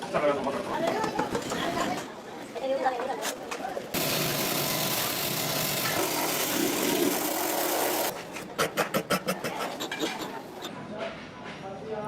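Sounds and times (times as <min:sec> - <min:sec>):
power tool grinding: 0:04.0 - 0:08.1.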